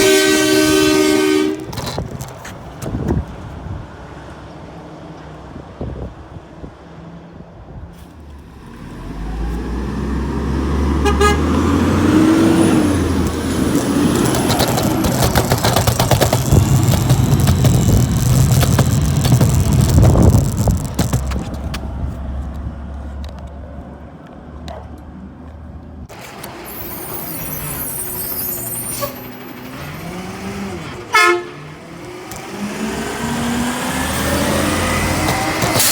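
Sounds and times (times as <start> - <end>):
truck horn toot: 0.0 - 2.0, 10.9 - 14.5, 26.8 - 31.9
garbage truck engine passing: 8.0 - 22.9, 26.1 - 35.9.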